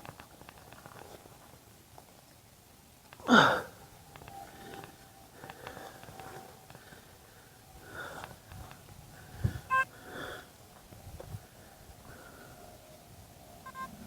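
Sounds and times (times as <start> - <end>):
metal detector beeping: 9.7 - 9.9, 13.6 - 14.0.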